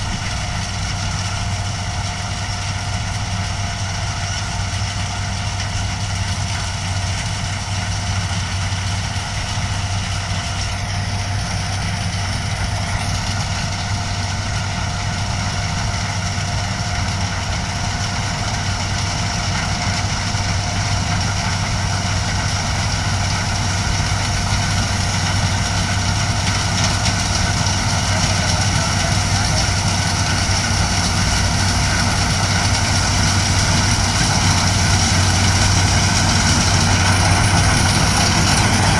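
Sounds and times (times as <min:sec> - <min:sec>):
combine harvester engine hum: 0:00.0 - 0:38.9
steady whining tones: 0:19.9 - 0:38.9.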